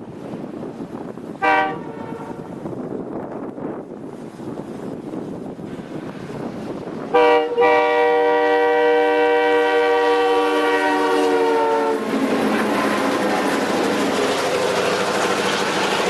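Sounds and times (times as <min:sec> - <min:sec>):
passing train rumble: 0:00.0 - 0:16.0
locomotive air horn blasts: 0:01.4 - 0:02.5, 0:07.1 - 0:12.2.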